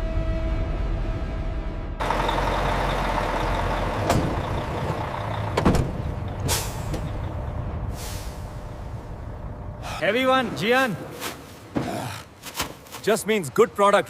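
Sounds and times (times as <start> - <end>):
heavy machinery running: 2.0 - 7.6
short hiss of air: 7.9 - 8.5.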